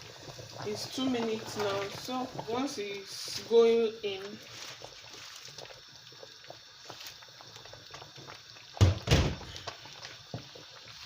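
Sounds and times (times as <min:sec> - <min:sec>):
heavy thumps: 0:08.8 - 0:09.5.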